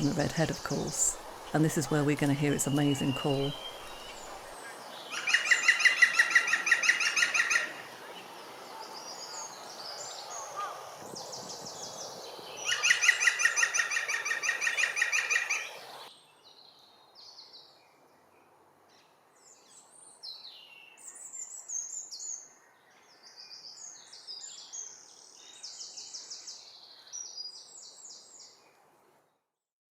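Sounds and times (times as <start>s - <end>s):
small birds chirping: 0.0s - 17.9s
woodpecker call: 5.1s - 7.9s, 12.7s - 15.7s.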